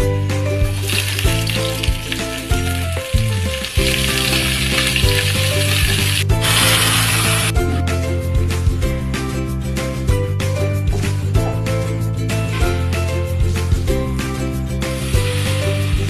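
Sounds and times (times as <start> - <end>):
background music: 0.0 - 16.0
vegetables sizzling in hot oil: 0.7 - 7.5, 14.9 - 16.0.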